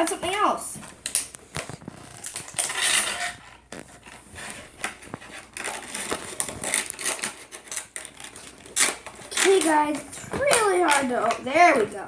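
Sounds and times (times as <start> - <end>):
toy packaging rustling: 0.0 - 12.0.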